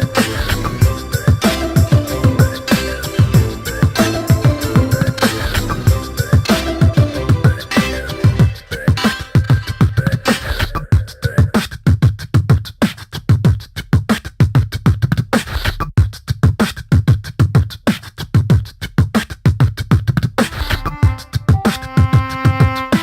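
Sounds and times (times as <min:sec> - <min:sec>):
synth-like melody: 0:00.0 - 0:10.4
beatbox rhythm: 0:00.0 - 0:23.0.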